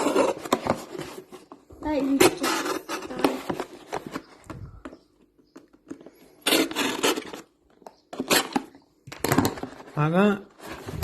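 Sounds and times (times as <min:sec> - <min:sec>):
cardboard carton being cut: 0:06.4 - 0:07.5.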